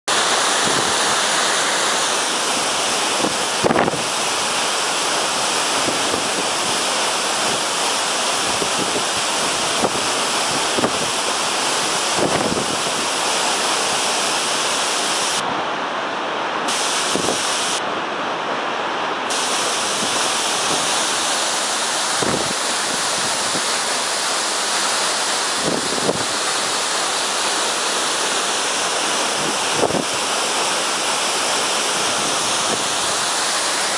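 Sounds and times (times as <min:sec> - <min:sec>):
waterfall rushing: 0:00.1 - 0:33.9
wind bumps on microphone: 0:12.2 - 0:12.9, 0:22.2 - 0:23.7.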